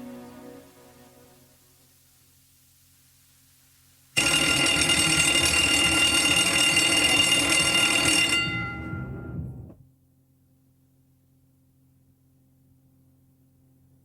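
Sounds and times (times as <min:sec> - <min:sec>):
bell ringing loudly: 0:04.2 - 0:09.7.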